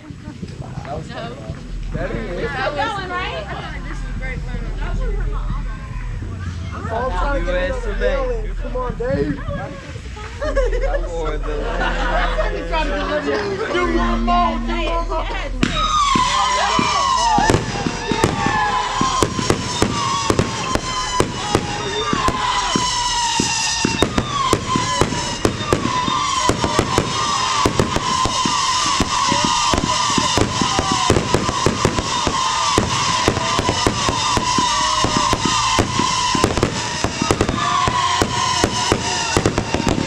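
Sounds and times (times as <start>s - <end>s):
fireworks crackling and banging: 0.0s - 40.0s
firework whistles: 13.8s - 40.0s.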